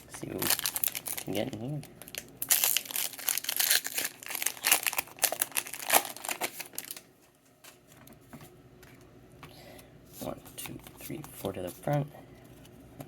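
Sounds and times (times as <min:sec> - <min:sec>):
foil wrapper tearing and crinkling: 0:00.2 - 0:07.1.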